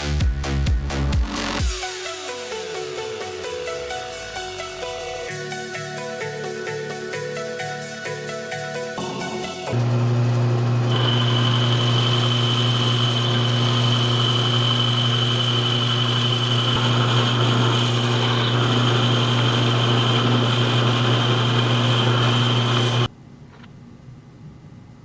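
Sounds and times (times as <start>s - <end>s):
machine tool motor whine: 9.0s - 23.1s.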